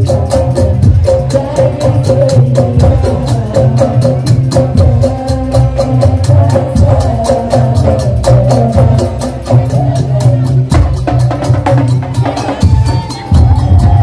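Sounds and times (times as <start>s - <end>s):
heavy drums: 0.0s - 14.0s
percussion band playing: 0.0s - 14.0s.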